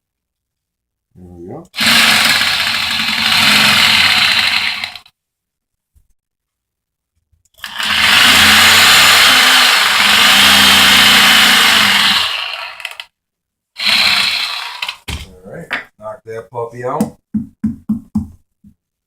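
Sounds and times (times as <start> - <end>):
reciprocating saw cutting pumpkin: 7.6 - 13.0.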